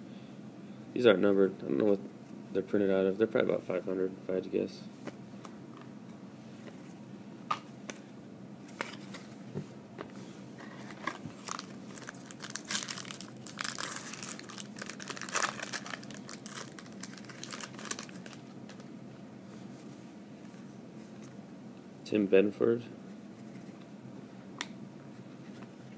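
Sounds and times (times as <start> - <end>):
wrapper tearing and crinkling: 10.8 - 18.8.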